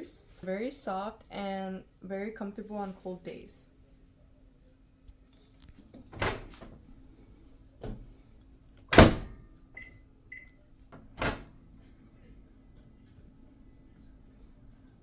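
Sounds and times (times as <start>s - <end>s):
microwave door shutting: 6.0s - 6.8s, 8.9s - 10.4s, 11.0s - 11.6s
short keypad beeps: 9.8s - 10.5s.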